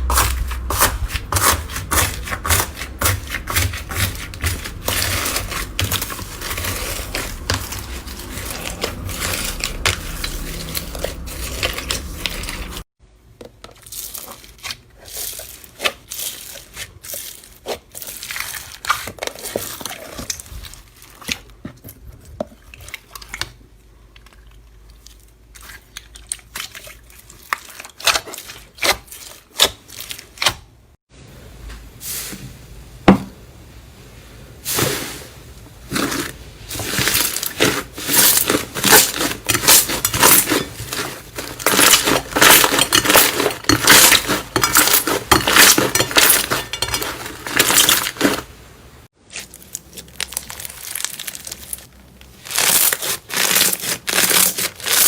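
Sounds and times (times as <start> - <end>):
slime crackling and popping: 49.2 - 55.0.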